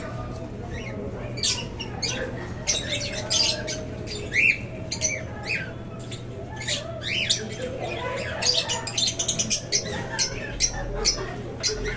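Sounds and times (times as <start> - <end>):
chicks squawking: 0.0 - 11.9.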